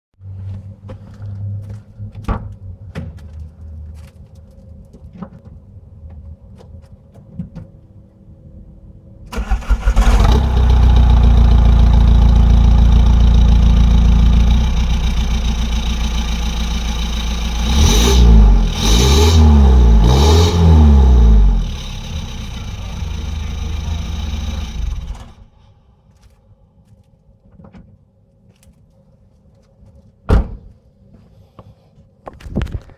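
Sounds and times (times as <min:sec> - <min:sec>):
diesel engine starting and idling: 0:09.3 - 0:25.6
diesel engine revving: 0:09.4 - 0:25.6.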